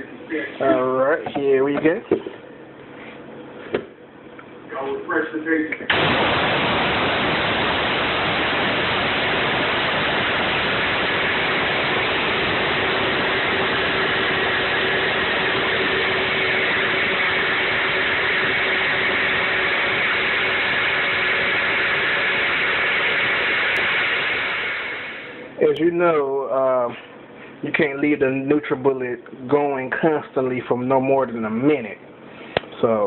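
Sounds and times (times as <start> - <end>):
blender grinding grain: 5.9 - 25.5.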